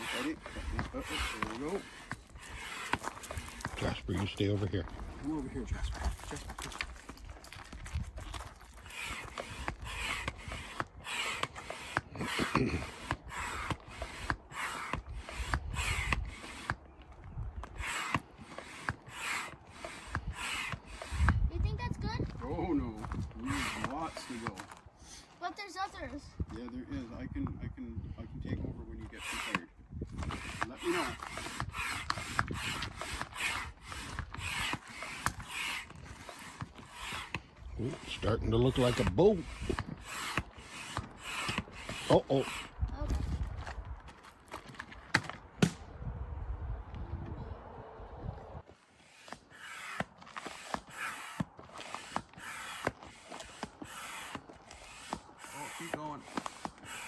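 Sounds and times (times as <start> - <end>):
manual air pump strokes: 0.0 - 26.2, 28.6 - 44.9, 48.6 - 57.0.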